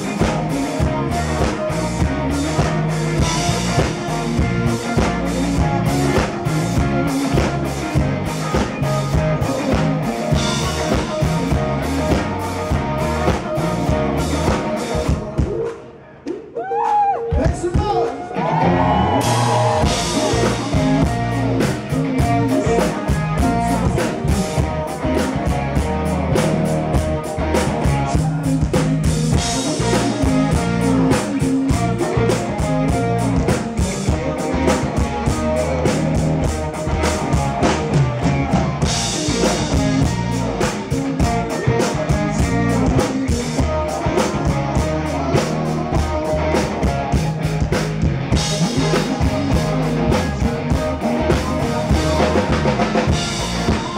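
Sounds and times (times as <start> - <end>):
drum kit beat: 0.0 - 15.9, 16.7 - 18.0, 19.1 - 53.9
live rock band playing: 0.0 - 16.2, 17.2 - 53.9.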